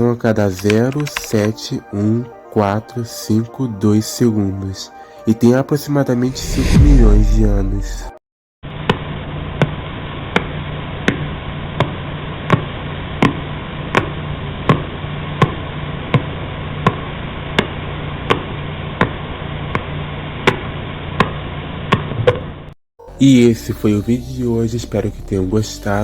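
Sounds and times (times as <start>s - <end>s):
sharp repeating clicks: 0.6s - 1.6s.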